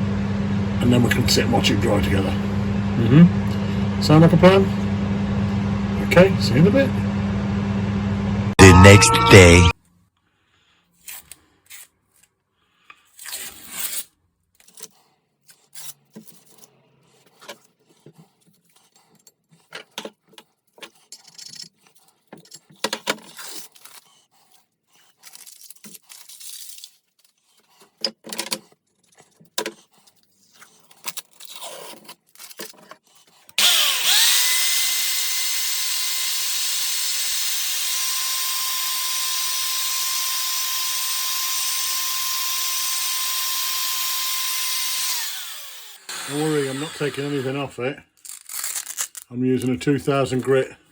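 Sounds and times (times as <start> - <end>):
metal parts knocking and scraping: 19.1 - 24.0
power tool motor whine: 33.6 - 47.6.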